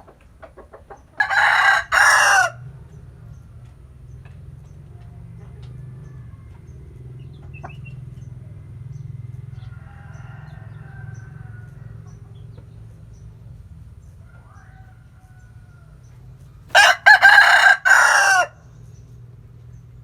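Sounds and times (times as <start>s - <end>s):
roosters crowing: 1.2s - 3.0s, 5.7s - 7.0s, 9.4s - 12.6s, 14.1s - 18.8s.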